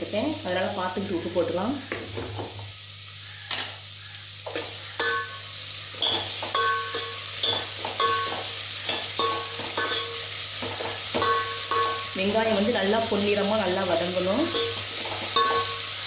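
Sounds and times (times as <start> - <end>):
onions sizzling in a pan: 0.0 - 16.0
spatula knocking on pan: 6.0 - 12.1.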